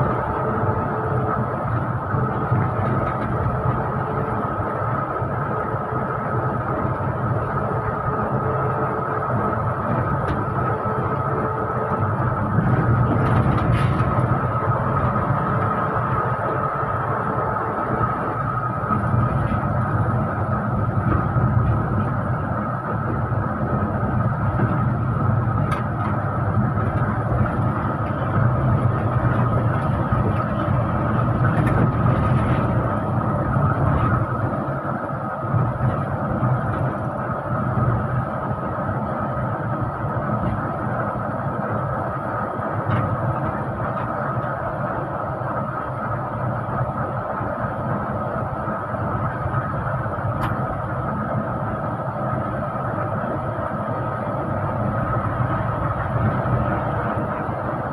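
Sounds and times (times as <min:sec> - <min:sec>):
bus engine and road rumble: 0:00.0 - 0:57.9
high whine: 0:00.0 - 0:57.9.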